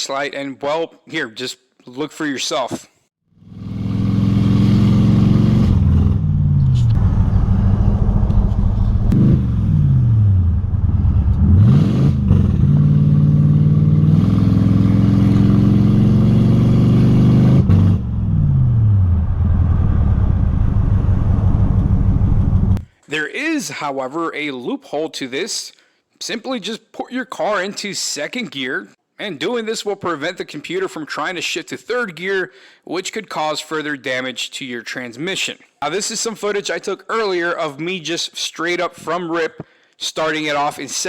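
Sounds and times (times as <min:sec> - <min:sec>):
car engine running under load: 0:05.6 - 0:13.2, 0:17.6 - 0:22.8.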